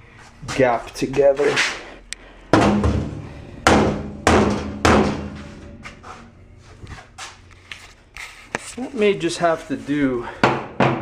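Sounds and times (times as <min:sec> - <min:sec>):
hammer striking sheet steel: 0:02.5 - 0:05.7.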